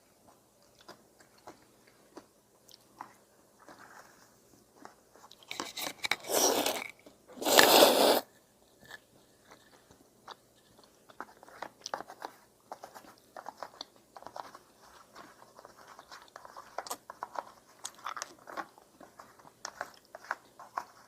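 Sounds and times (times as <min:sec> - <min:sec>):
soft chewing clicks: 0:00.2 - 0:05.5.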